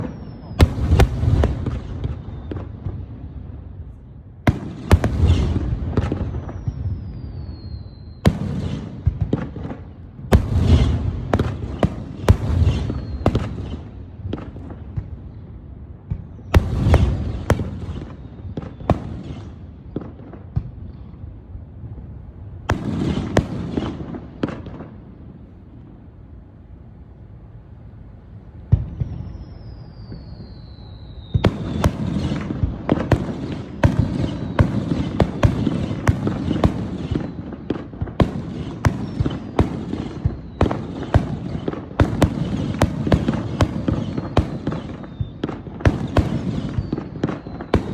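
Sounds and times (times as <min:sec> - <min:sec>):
falling firework whistle: 0:00.0 - 0:03.1, 0:04.5 - 0:09.2, 0:10.4 - 0:15.1, 0:16.1 - 0:21.1, 0:28.8 - 0:37.9, 0:38.7 - 0:47.9
fireworks bursting with bangs: 0:00.0 - 0:26.0, 0:28.6 - 0:47.9
fireworks crackling: 0:00.0 - 0:26.1, 0:28.7 - 0:47.9.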